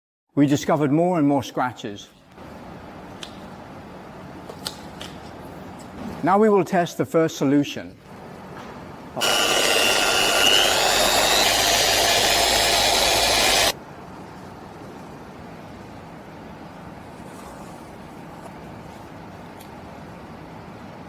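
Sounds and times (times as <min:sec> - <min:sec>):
faint background hum: 0:00.3 - 0:09.2, 0:13.7 - 0:21.0
electric polisher whining: 0:09.2 - 0:13.8.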